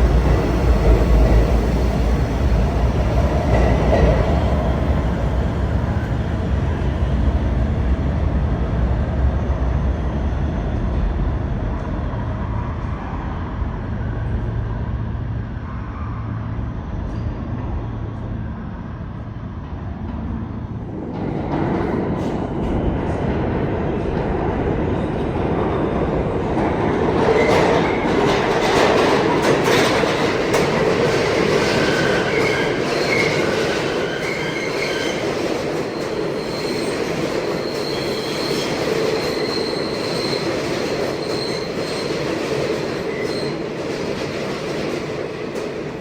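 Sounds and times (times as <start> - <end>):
subway train rumbling on rails: 0.0 - 46.0
steel wheels squealing: 31.7 - 42.2.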